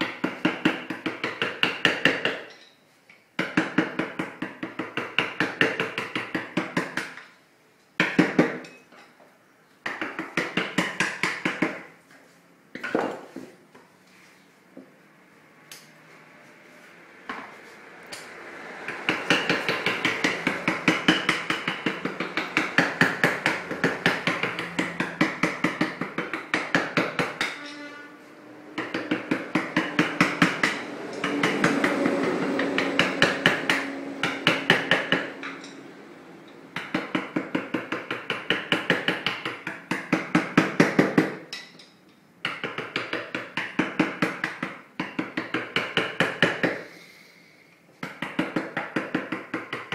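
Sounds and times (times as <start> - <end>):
fast hammer-like tapping: 18.9 - 27.6, 28.8 - 35.5, 36.8 - 41.4.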